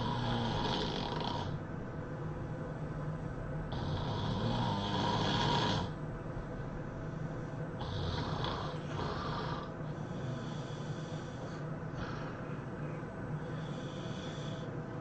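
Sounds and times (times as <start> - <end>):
person snoring heavily: 0.0 - 1.6, 3.7 - 6.0, 7.8 - 12.5, 13.4 - 14.7.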